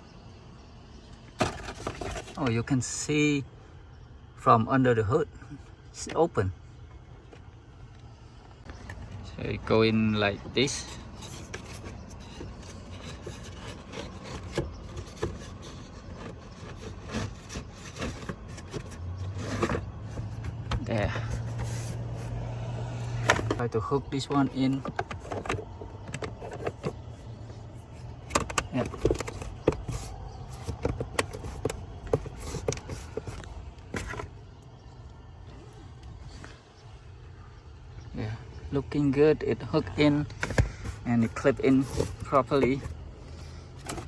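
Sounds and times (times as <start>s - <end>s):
filter scraping plastic housing: 1.3s - 2.4s, 10.4s - 34.4s, 40.3s - 43.0s, 43.7s - 44.0s.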